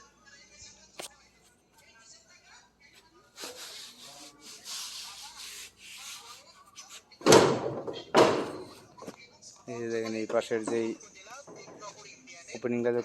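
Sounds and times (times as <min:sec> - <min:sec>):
loud thumps: 0:07.2 - 0:08.8.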